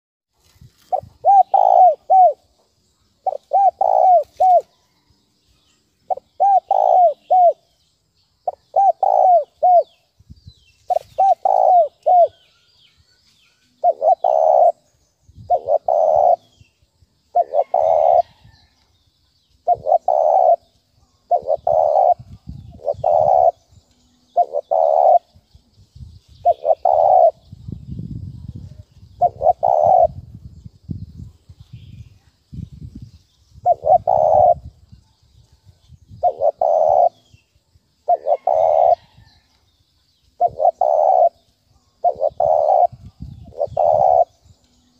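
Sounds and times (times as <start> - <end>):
dove cooing: 0.9 - 2.5, 3.2 - 4.7, 6.1 - 7.7, 8.5 - 10.0, 10.9 - 12.4, 13.8 - 14.8, 15.5 - 16.5, 17.3 - 18.5, 19.6 - 23.6, 24.3 - 25.3, 26.4 - 27.4, 28.7 - 30.3, 33.6 - 34.8, 36.2 - 37.3, 38.0 - 39.3, 40.4 - 44.5.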